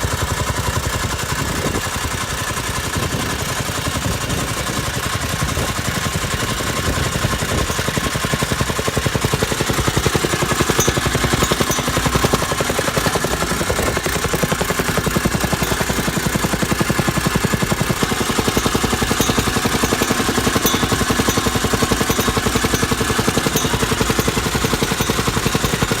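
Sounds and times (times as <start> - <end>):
tamping rammer pounding: 0.0 - 26.0.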